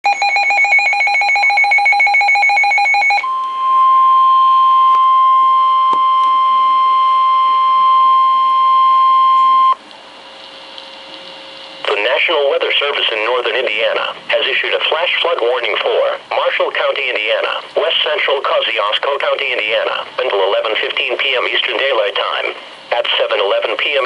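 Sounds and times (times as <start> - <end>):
faint radio hiss: 9.9 - 24.0
steady radio warning tone: 11.8 - 24.0.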